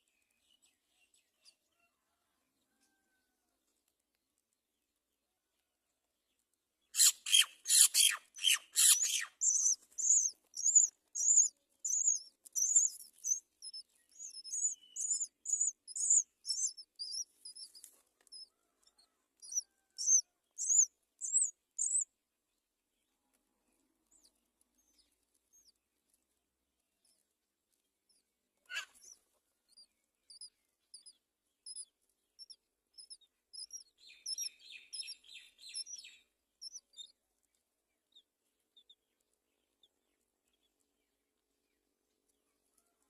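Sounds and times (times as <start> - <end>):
baby birds chirping: 7.0 - 22.0, 28.1 - 37.2.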